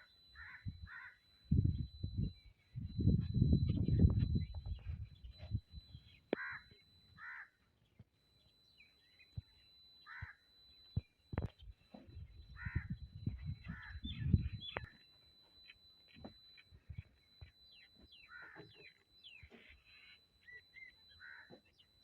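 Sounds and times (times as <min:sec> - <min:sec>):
crow cawing: 0:00.0 - 0:01.3, 0:06.3 - 0:07.6, 0:10.1 - 0:10.4, 0:12.6 - 0:12.9, 0:13.6 - 0:14.1, 0:18.2 - 0:18.9, 0:20.8 - 0:21.6.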